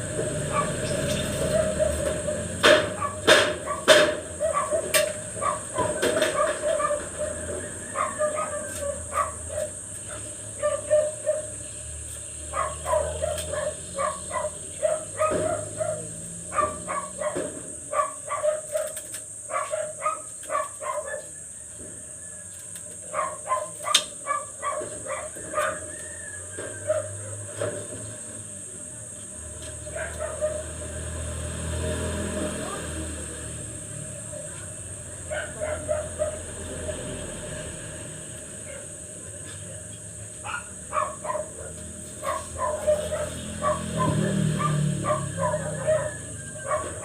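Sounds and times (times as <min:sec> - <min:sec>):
dog barking: 0:00.4 - 0:11.6, 0:12.5 - 0:21.4, 0:23.1 - 0:27.4, 0:29.9 - 0:31.0, 0:32.4 - 0:33.3, 0:35.2 - 0:37.0, 0:38.6 - 0:39.0, 0:40.4 - 0:47.0
sharp knocks: 0:02.1 - 0:06.6.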